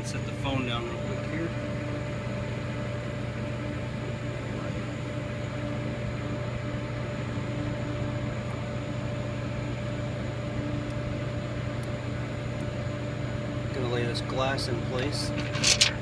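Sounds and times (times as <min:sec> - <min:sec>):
electrical machine hum: 0:00.0 - 0:16.0.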